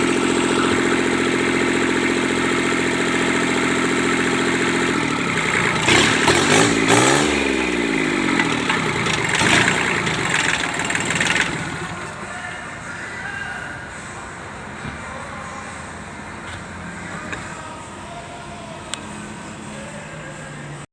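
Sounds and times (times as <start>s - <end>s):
diesel engine running: 0.0s - 20.9s.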